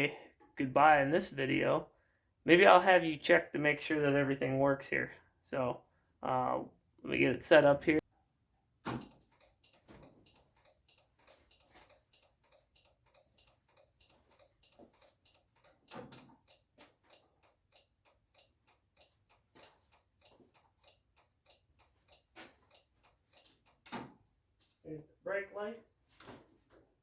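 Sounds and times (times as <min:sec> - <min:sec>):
turn signal relay ticking: 0:08.5 - 0:24.8.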